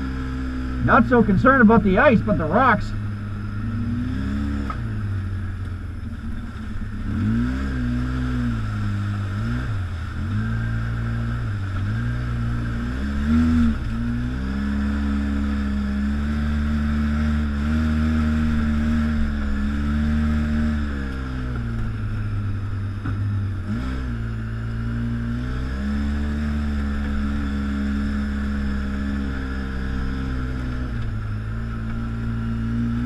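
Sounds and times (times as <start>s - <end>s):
atv engine running: 0.0s - 33.0s.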